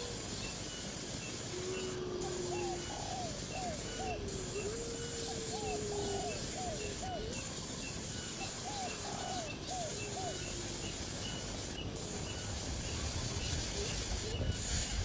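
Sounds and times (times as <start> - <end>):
background hiss: 0.0 - 15.0
bird calling: 1.4 - 11.5.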